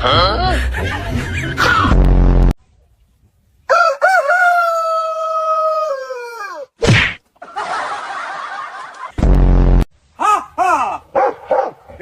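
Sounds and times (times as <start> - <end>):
rooster crowing: 3.7 - 6.7
sharp thump: 6.8 - 7.2.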